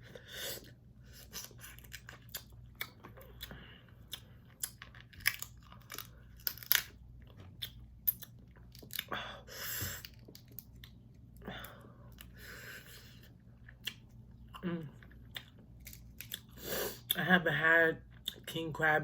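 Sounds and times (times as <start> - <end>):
wet chewing and smacking: 0.6 - 9.1, 9.8 - 17.3, 18.0 - 18.6.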